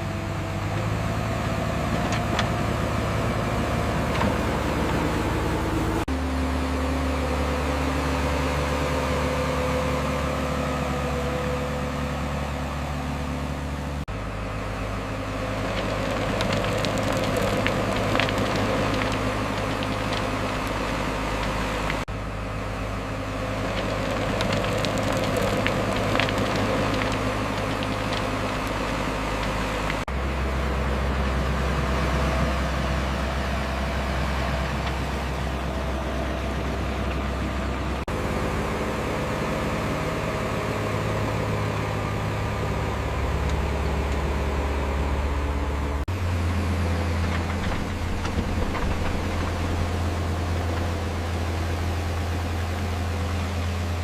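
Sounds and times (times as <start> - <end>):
diesel construction machinery running: 0.0 - 54.0
machinery clatter: 15.6 - 22.0, 23.6 - 30.1, 39.8 - 52.8.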